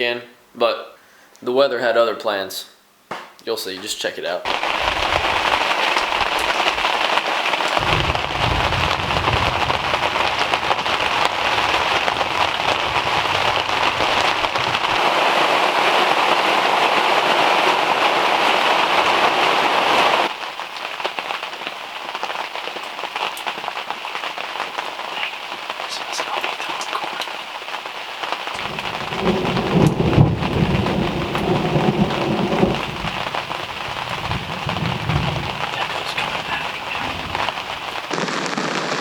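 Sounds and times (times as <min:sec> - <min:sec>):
heavy rain pouring: 0:04.5 - 0:39.0
low rumble: 0:07.8 - 0:15.0, 0:28.6 - 0:38.1.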